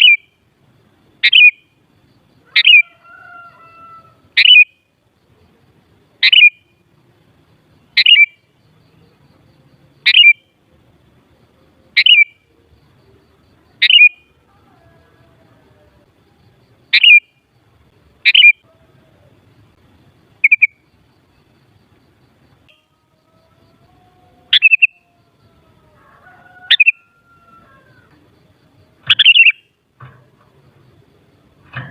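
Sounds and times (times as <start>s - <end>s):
bird giving sharp calls: 24.5s - 24.9s, 29.1s - 29.6s.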